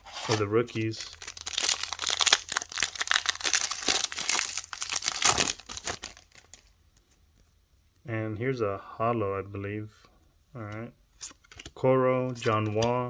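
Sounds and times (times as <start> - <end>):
plastic wrapper tearing and crinkling: 0.3 - 6.7.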